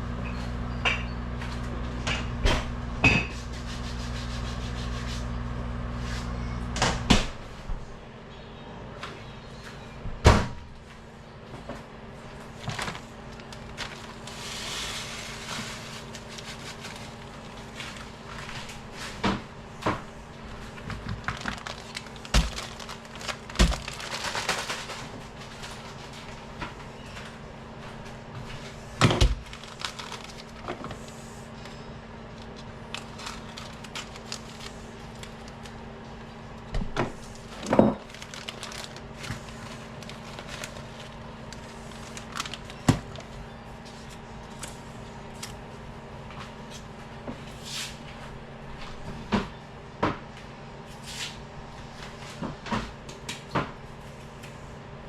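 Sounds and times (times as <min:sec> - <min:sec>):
steady low hum: 0:00.0 - 0:55.0
rubbing or scraping: 0:03.3 - 0:05.4, 0:13.6 - 0:19.2.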